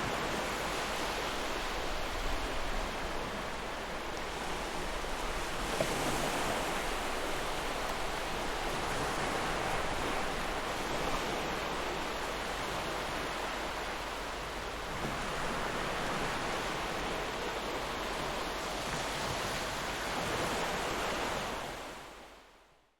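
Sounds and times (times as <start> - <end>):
ocean surf waves: 0.0 - 22.4.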